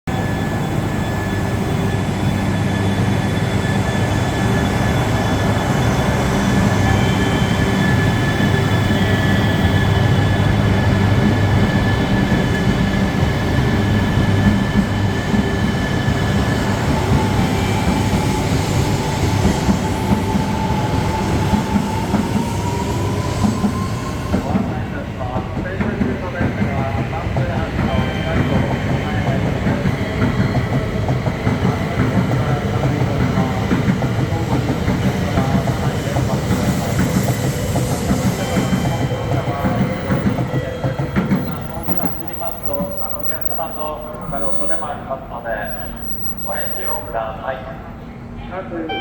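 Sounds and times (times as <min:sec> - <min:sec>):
train hum with whining tones: 0:00.1 - 0:49.0.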